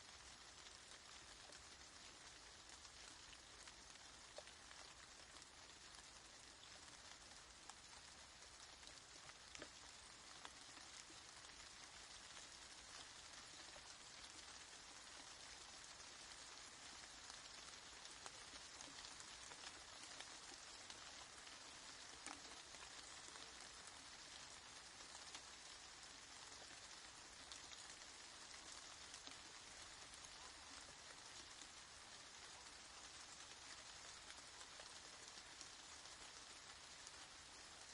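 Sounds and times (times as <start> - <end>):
soft rain falling: 0.0 - 37.9.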